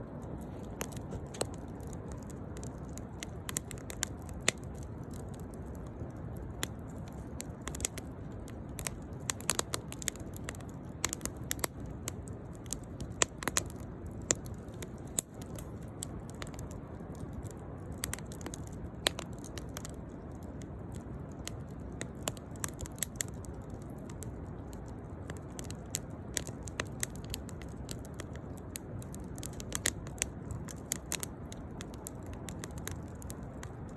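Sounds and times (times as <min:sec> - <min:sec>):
firewood crackling and popping: 0:00.0 - 0:33.9.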